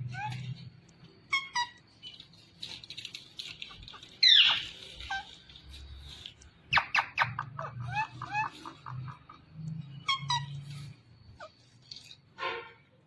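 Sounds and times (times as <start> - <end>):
parrot squawking: 1.3 - 1.9, 3.9 - 5.4, 6.7 - 11.6.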